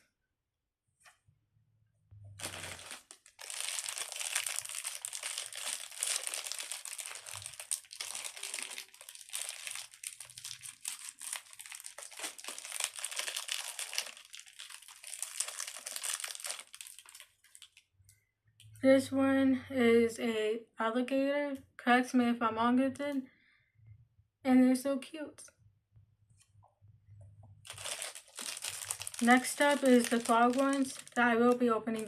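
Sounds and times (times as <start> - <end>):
plastic packaging crinkling: 2.4 - 17.9, 27.6 - 32.0.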